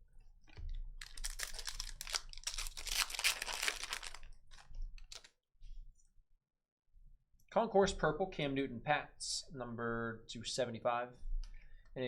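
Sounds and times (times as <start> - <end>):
card pack wrapper tearing and crinkling: 1.0 - 5.3.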